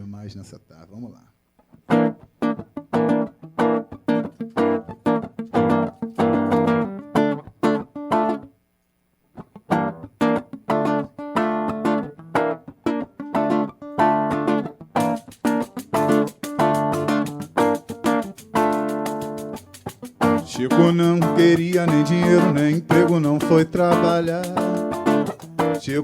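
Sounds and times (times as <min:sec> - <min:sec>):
strummed acoustic guitar: 0:01.9 - 0:08.4, 0:09.6 - 0:26.0
sharp percussion: 0:15.0 - 0:26.0.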